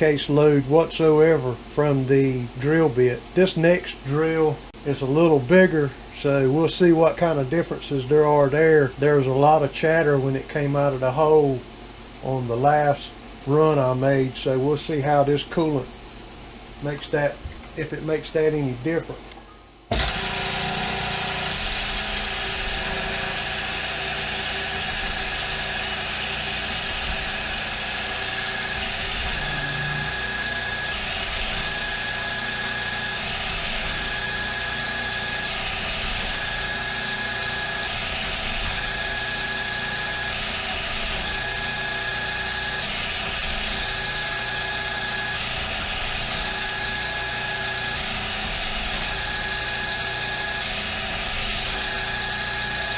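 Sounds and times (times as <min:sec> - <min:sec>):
high drilling tone: 0:19.9 - 0:52.9
milling machine spindle running: 0:19.9 - 0:52.9.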